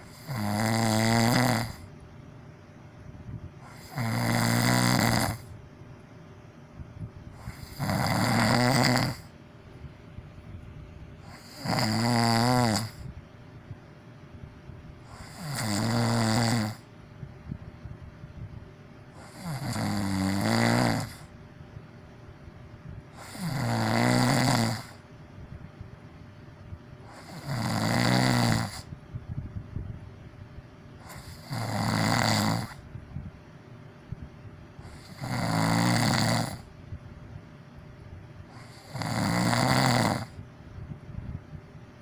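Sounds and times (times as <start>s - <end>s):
person snoring: 0.0s - 1.9s, 3.6s - 5.5s, 7.3s - 9.3s, 11.2s - 13.1s, 15.1s - 16.9s, 19.2s - 21.3s, 23.2s - 25.0s, 27.1s - 28.9s, 31.0s - 32.8s, 34.8s - 36.7s, 38.5s - 40.4s.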